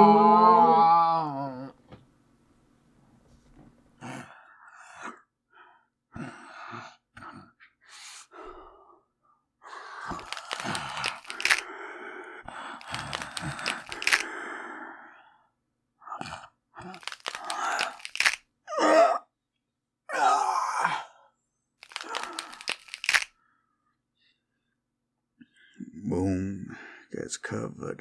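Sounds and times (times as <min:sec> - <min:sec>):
man gasping and groaning: 0:09.8 - 0:15.2, 0:16.0 - 0:19.2, 0:20.1 - 0:23.2
bones cracking effects: 0:10.0 - 0:11.8, 0:12.7 - 0:14.4, 0:16.2 - 0:18.5, 0:21.8 - 0:23.3.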